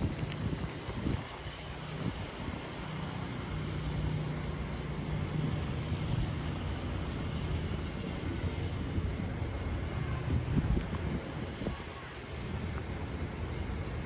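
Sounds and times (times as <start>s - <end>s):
street noise: 0.0s - 14.0s
vehicle engine humming: 0.0s - 14.0s.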